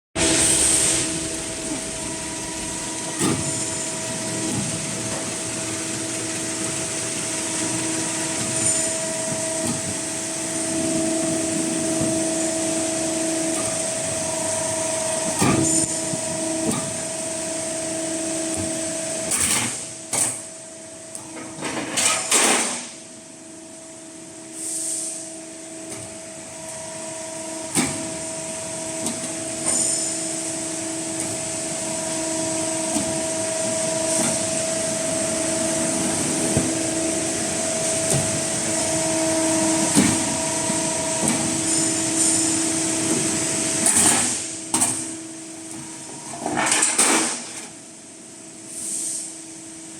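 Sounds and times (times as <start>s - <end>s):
machine motor hum: 0.2s - 21.6s, 25.6s - 44.0s.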